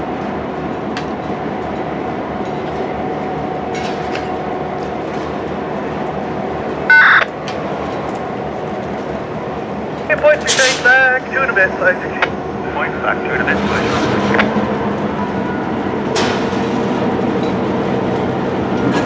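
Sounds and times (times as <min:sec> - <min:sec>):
freight train rumbling: 0:00.0 - 0:19.0
loud electronic beep: 0:06.9 - 0:07.3.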